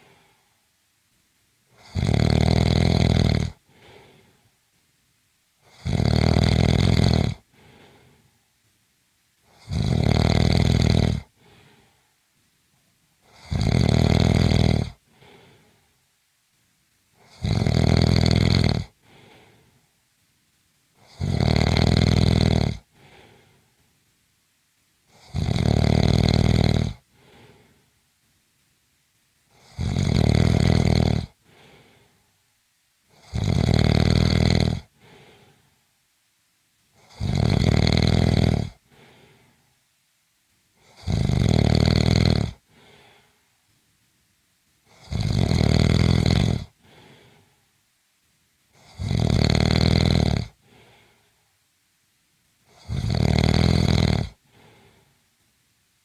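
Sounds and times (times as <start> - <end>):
faint breath: 0.0 - 0.7, 3.6 - 4.6, 7.4 - 8.6, 11.2 - 12.2, 14.9 - 16.0, 18.9 - 20.0, 22.8 - 24.0, 27.1 - 28.0, 31.4 - 32.5, 34.9 - 36.0, 38.8 - 39.9, 42.6 - 43.7, 46.7 - 47.8, 50.5 - 51.6, 54.3 - 55.4
loud buzzing snore: 1.8 - 3.6, 5.6 - 7.4, 9.5 - 11.6, 13.3 - 15.5, 17.2 - 19.4, 21.0 - 23.3, 25.1 - 27.6, 29.5 - 31.9, 33.1 - 35.5, 37.0 - 39.2, 40.8 - 43.1, 44.9 - 47.2, 48.8 - 50.9, 52.7 - 55.0.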